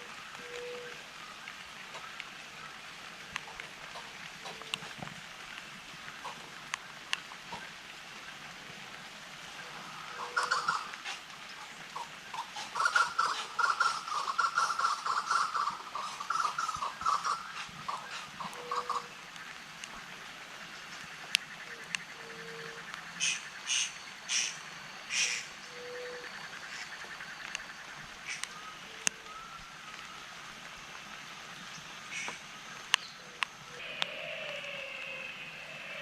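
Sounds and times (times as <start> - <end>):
birds chattering calls: 10.0 - 11.0, 11.9 - 19.2, 21.1 - 29.4, 31.7 - 36.0.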